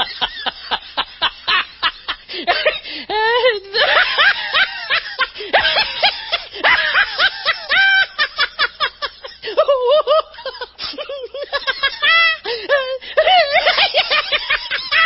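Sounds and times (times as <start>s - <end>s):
high-pitched laughter: 0.0s - 15.0s.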